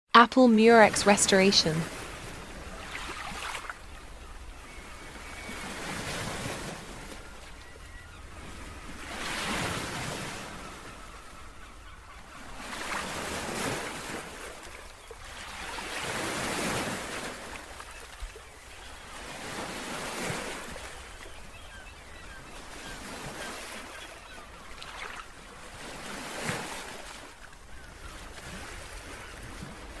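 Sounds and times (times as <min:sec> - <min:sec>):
waves washing in: 0:00.4 - 0:07.6, 0:12.5 - 0:18.1.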